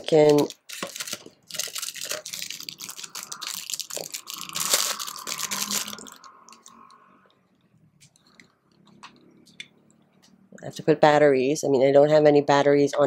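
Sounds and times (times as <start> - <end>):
packaging crackling and rustling: 0.0 - 6.7.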